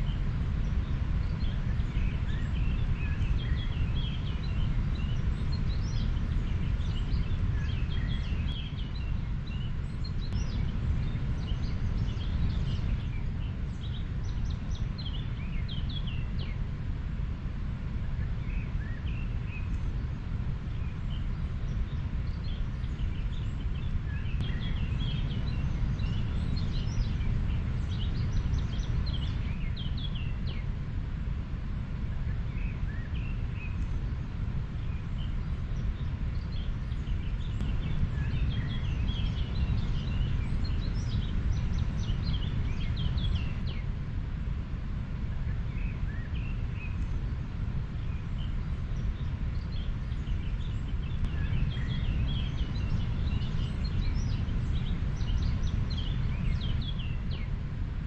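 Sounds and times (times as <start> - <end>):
birds chirping: 20.8 - 30.6, 34.7 - 43.8, 45.5 - 57.5.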